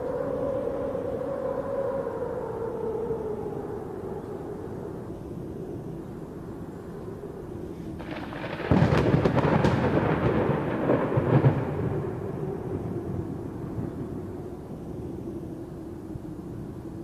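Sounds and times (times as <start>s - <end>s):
steady wind: 0.0s - 17.0s
thunderclap: 8.0s - 14.5s.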